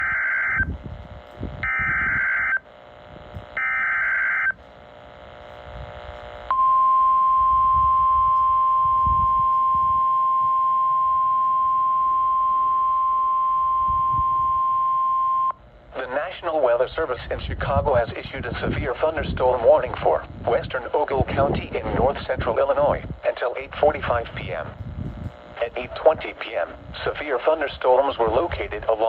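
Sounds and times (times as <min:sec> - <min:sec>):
warbling data tone bursts: 0:00.0 - 0:00.8, 0:01.6 - 0:02.7, 0:03.5 - 0:04.6
steady warning alarm tone: 0:00.0 - 0:15.7.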